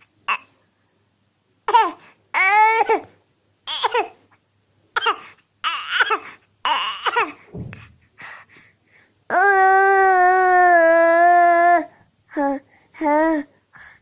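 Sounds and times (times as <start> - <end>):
child fake coughing: 5.0 - 7.4.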